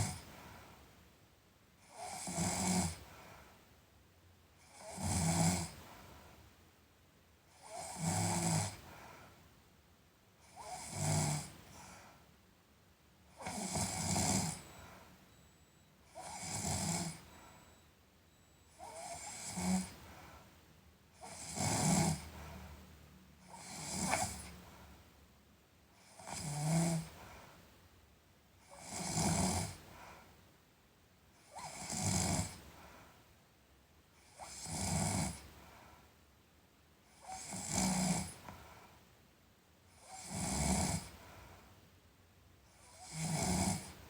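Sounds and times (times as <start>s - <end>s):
person snoring: 13.4s - 14.8s, 16.1s - 17.3s, 18.8s - 20.0s, 21.2s - 22.3s, 37.4s - 38.4s, 43.0s - 44.0s.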